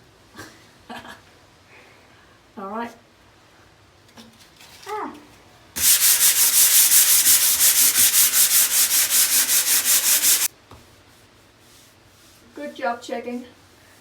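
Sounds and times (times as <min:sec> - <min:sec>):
sandpaper rubbing on a wall: 0:05.8 - 0:10.5, 0:11.2 - 0:12.6.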